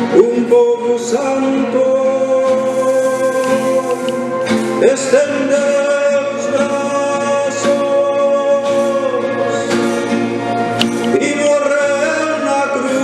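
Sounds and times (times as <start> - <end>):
instrumental accompaniment: 1.2 - 13.0
choir singing long notes: 2.0 - 11.3.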